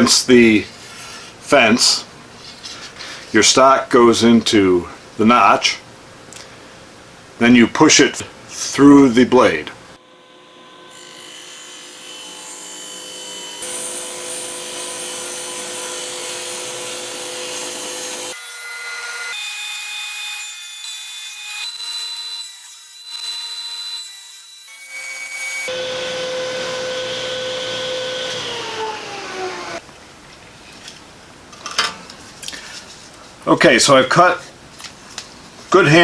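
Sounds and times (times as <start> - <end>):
table saw cutting wood: 10.0 - 29.8.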